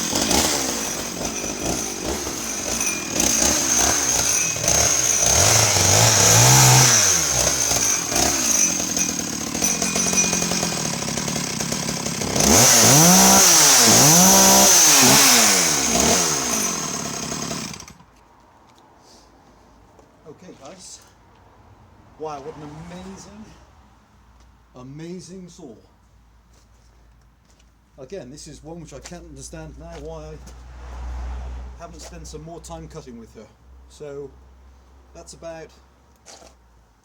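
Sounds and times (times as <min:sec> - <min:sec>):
chainsaw cutting timber: 0:00.0 - 0:18.1.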